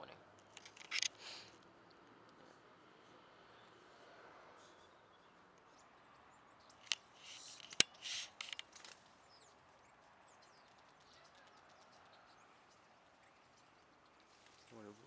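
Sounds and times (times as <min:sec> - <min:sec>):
sharp clicks: 0:00.4 - 0:01.4, 0:06.7 - 0:09.0
bird chirps: 0:04.6 - 0:15.0
short rustling bursts: 0:06.8 - 0:09.1.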